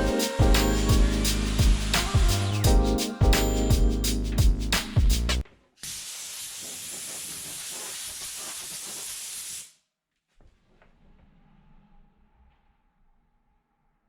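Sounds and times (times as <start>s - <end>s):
compressed air hissing: 0.0s - 3.1s, 5.8s - 9.7s
background music: 0.0s - 5.4s.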